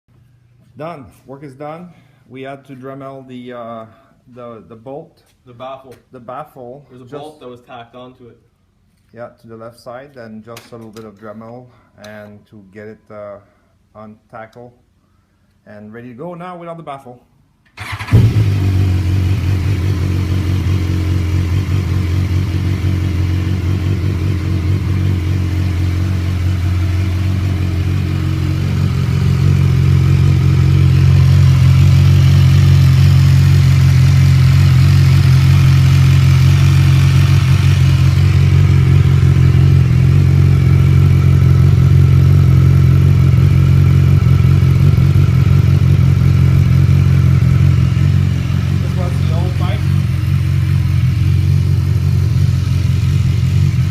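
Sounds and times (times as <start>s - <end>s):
motorcycle engine idling: 17.8s - 53.9s.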